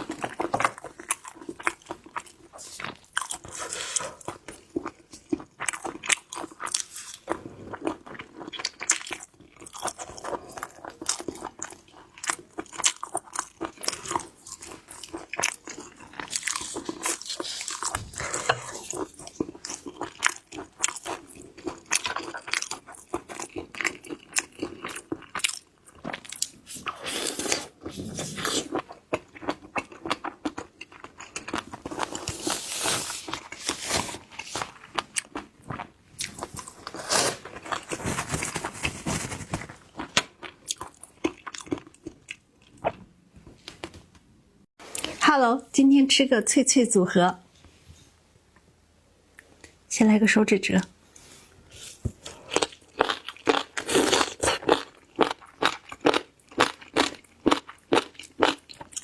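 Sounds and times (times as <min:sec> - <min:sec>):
shellfish crunching when chewed: 0:51.8 - 0:59.0.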